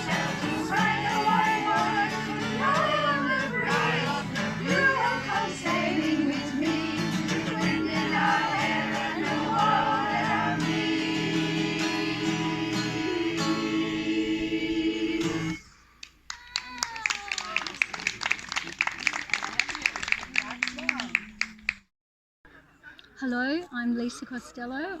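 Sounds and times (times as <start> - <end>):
several voices singing: 0.0 - 15.7.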